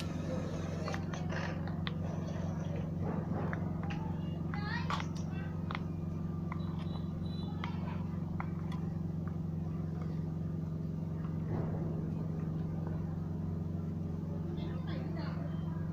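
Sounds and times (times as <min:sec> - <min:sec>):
motor humming: 0:00.0 - 0:15.9.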